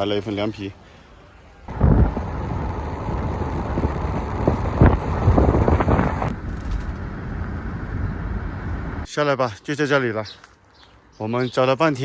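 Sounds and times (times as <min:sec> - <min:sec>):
car road and wind noise: 0:01.7 - 0:09.1.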